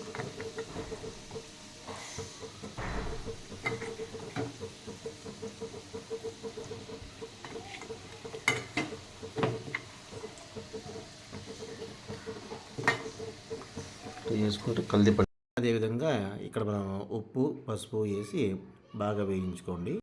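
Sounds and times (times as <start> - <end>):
spoon scraping and knocking pan: 0.0 - 14.9
spices frying in oil: 0.0 - 15.3.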